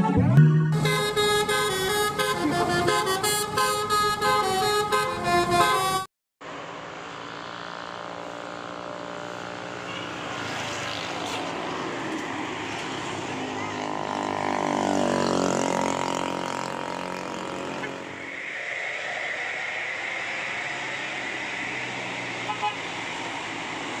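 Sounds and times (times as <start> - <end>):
bus engine running: 0.0 - 6.0, 14.9 - 24.0
bus horn playing multi-tone tune: 0.0 - 6.1, 22.4 - 22.9.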